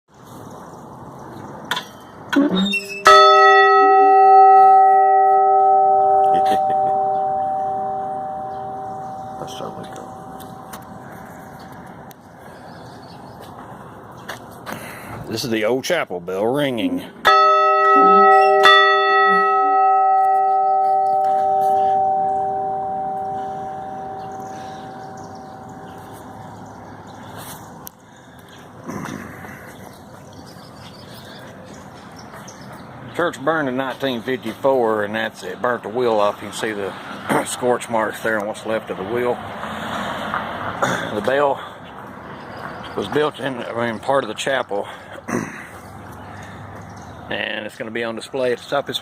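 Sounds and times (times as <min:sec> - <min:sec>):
church bell ringing: 0:02.9 - 0:11.8, 0:17.2 - 0:27.3.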